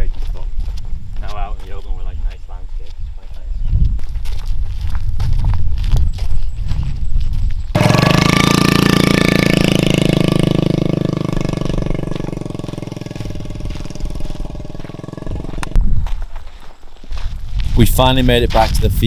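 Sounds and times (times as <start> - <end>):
small engine pulsing drone: 7.8 - 15.8.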